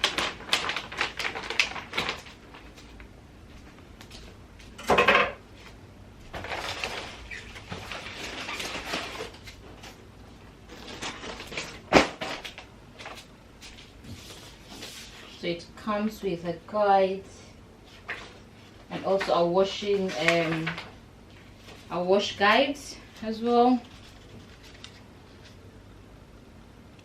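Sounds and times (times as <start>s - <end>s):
packaging rustling: 0.0s - 3.1s, 6.3s - 15.4s, 23.2s - 25.6s.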